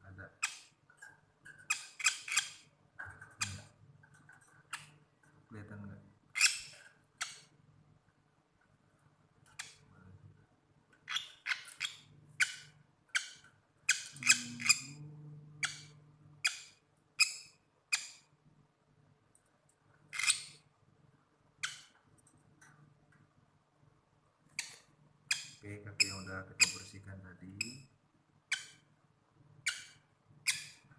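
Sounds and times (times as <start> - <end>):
lovebird squawking: 11.1 - 15.0, 15.6 - 18.2.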